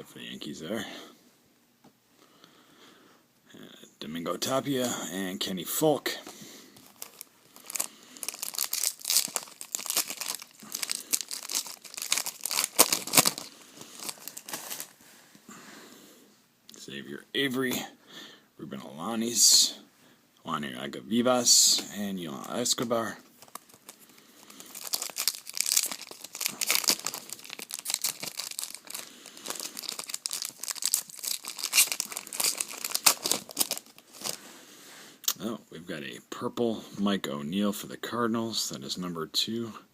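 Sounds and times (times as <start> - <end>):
card pack wrapper tearing: 6.8 - 14.9, 23.4 - 34.4
wrapper crinkling: 6.8 - 15.0, 22.4 - 34.4.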